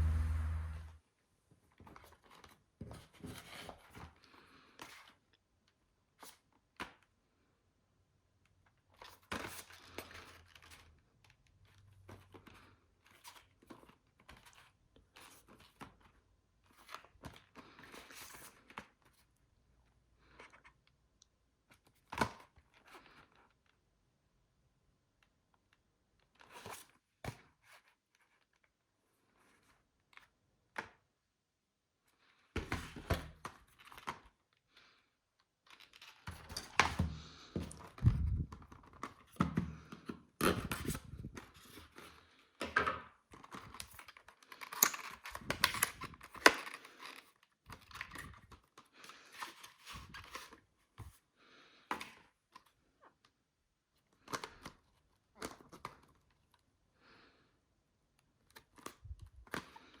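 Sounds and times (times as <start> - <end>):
packaging rustling and clicking: 43.4 - 50.6.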